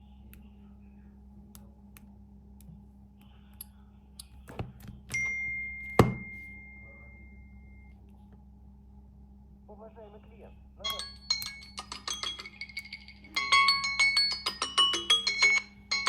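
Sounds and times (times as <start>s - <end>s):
high ringing ding: 5.1s - 7.9s
knock: 6.0s - 6.4s.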